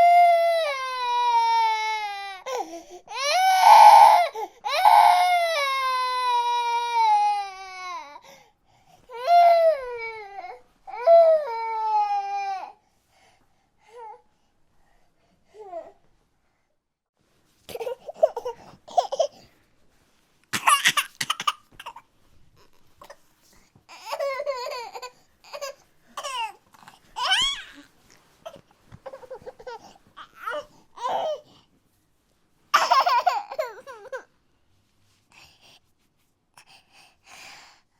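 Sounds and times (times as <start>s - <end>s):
young child crying and sobbing: 0.0s - 8.2s, 9.1s - 12.8s, 23.9s - 26.6s, 27.2s - 27.9s, 28.5s - 31.5s, 32.8s - 34.3s.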